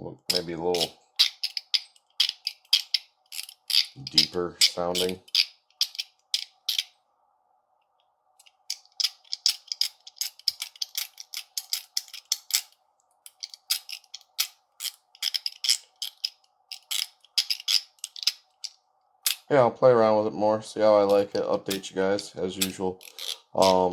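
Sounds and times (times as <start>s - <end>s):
crisp metallic clicks of haptic coin: 22.6s - 23.9s.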